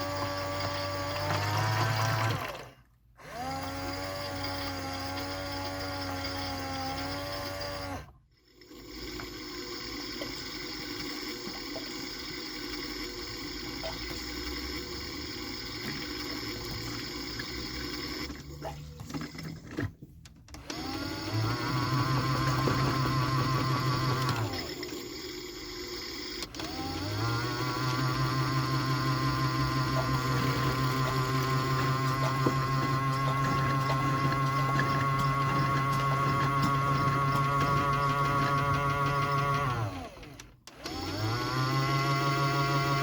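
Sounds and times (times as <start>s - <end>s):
washing machine motor humming: 0.0s - 43.0s
water sloshing in washing machine: 26.6s - 39.9s.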